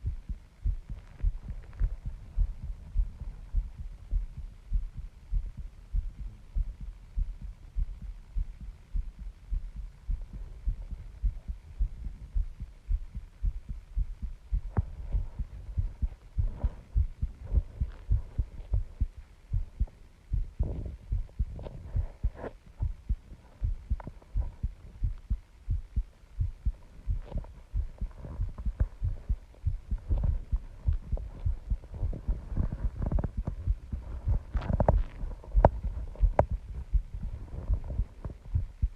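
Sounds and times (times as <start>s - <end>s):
heartbeat thuds: 0.0s - 38.9s
light scratchy clicks: 26.1s - 38.8s.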